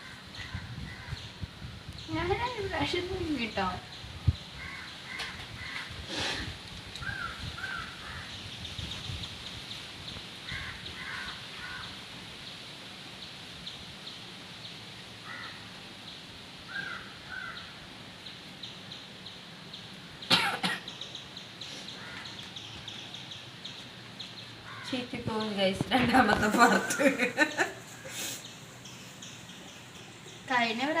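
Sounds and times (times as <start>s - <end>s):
crows cawing: 4.6s - 6.1s, 7.0s - 8.3s, 10.4s - 12.0s, 15.2s - 15.7s, 16.7s - 17.8s, 21.9s - 22.5s, 24.6s - 25.0s
sharp burst of breath: 6.0s - 6.6s, 21.6s - 22.0s, 28.0s - 28.6s.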